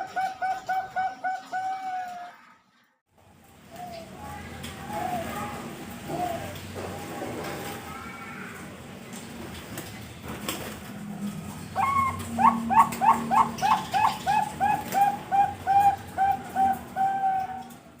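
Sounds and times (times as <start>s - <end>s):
dove cooing: 0.0s - 2.4s, 3.7s - 6.8s, 11.6s - 18.0s.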